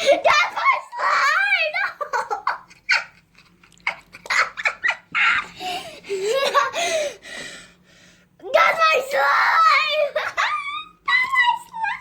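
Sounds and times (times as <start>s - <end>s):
child laughing: 0.0s - 6.9s, 9.8s - 12.0s.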